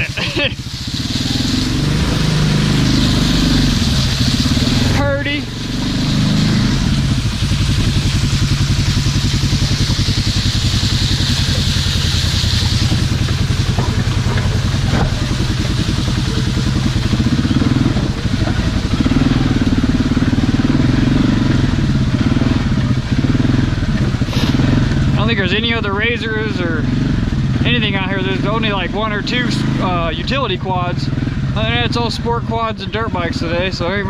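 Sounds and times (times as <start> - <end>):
hiss: 0.0 - 18.9, 24.2 - 25.0
single-cylinder engine running: 0.0 - 34.0.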